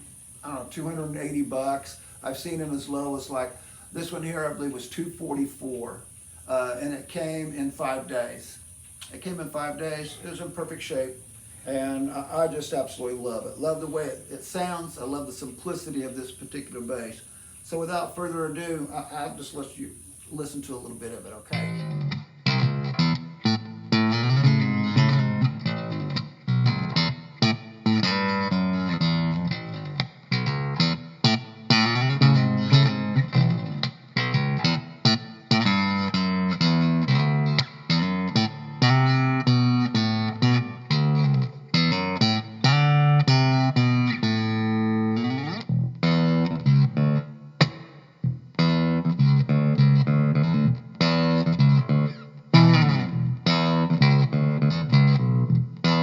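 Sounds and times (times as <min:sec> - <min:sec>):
electric bass guitar plucked notes: 0:21.4 - 0:56.0.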